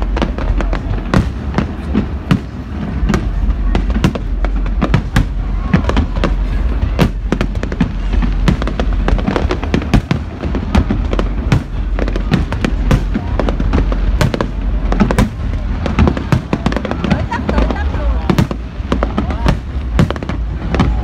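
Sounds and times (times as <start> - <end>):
fireworks bangs and crackles: 0.0 - 21.0.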